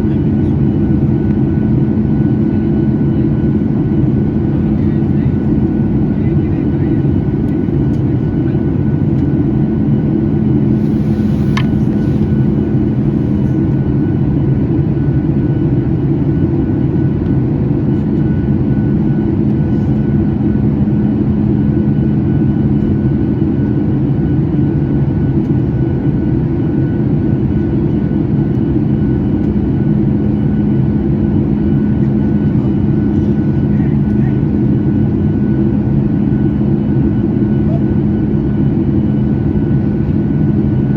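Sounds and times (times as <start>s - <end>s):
aircraft cabin engine rumble: 0.0s - 40.9s.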